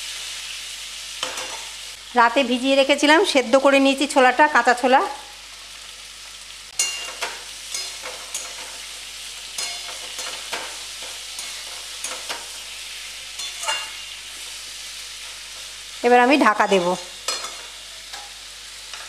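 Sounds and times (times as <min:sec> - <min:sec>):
vegetables sizzling in oil: 0:00.0 - 0:19.0
spatula scraping a pan: 0:06.8 - 0:15.8.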